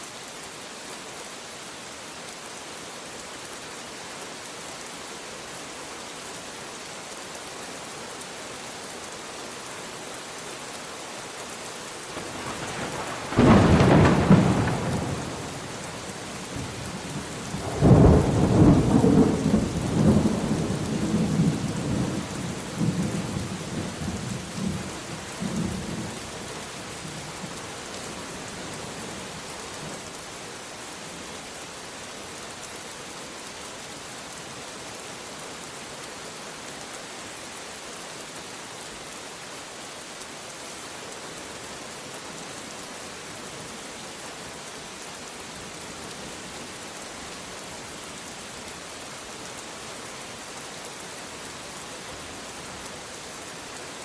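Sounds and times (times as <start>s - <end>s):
steady rain: 0.0s - 54.0s
rolling thunder rumbles: 12.2s - 15.7s.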